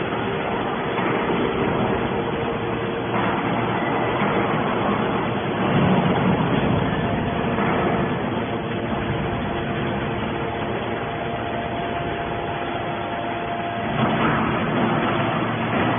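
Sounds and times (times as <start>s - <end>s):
hydraulic baler humming: 0.0s - 15.9s.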